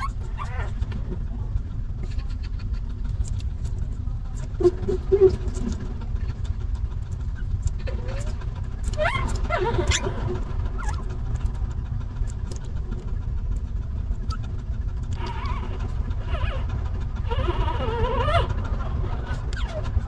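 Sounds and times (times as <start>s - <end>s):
newborn puppies whining: 0.0s - 0.8s, 8.9s - 11.1s, 15.2s - 20.0s
steady low rumble: 0.0s - 20.0s.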